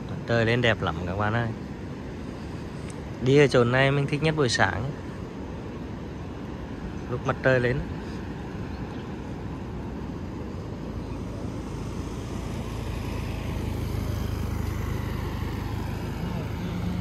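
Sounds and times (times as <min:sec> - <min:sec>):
surf on a beach: 0:00.0 - 0:17.0
wind: 0:00.0 - 0:17.0.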